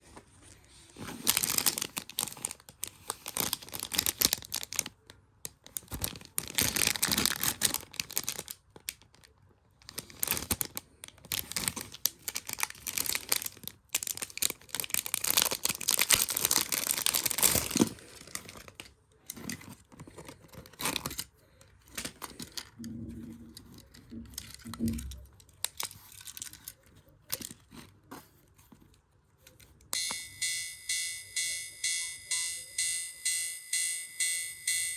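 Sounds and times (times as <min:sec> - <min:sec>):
packaging crinkling and tearing: 0:01.0 - 0:22.7, 0:23.7 - 0:27.7.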